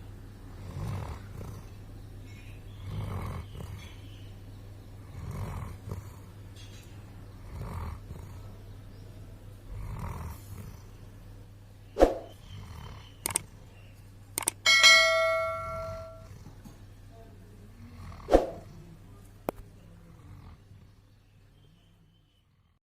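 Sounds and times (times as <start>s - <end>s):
dog snoring: 0.4s - 1.9s, 2.6s - 4.2s, 5.0s - 6.4s, 7.3s - 8.9s, 9.6s - 11.2s, 12.2s - 13.5s, 15.6s - 16.8s, 17.7s - 18.8s, 19.9s - 21.2s, 22.3s - 22.8s
sharp clicks: 13.2s - 13.5s, 14.4s - 14.6s
bell-like metallic ring: 14.6s - 16.3s.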